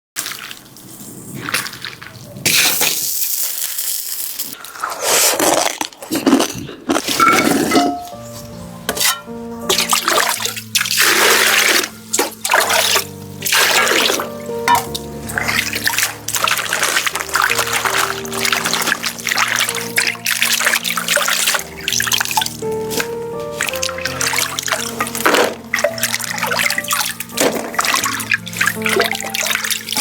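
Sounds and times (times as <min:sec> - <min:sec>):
water splashing and pouring: 0:00.2 - 0:06.0, 0:09.0 - 0:30.0
background music: 0:07.1 - 0:30.0.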